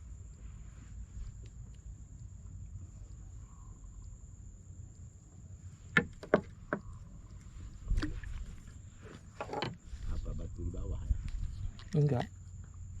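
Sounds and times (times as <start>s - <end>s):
low steady rumble: 0.0s - 13.0s
sharp knocks: 6.0s - 6.9s.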